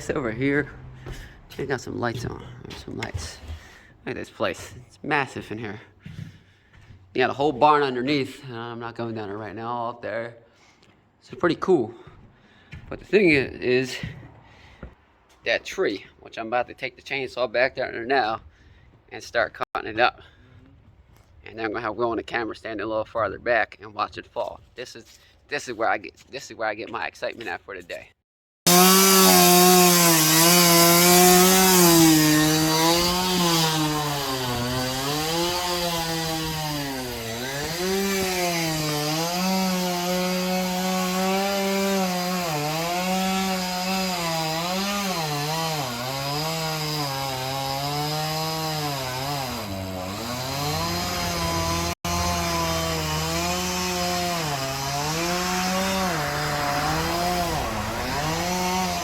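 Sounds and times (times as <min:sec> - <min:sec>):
chainsaw cutting wood: 0:28.7 - 0:59.0.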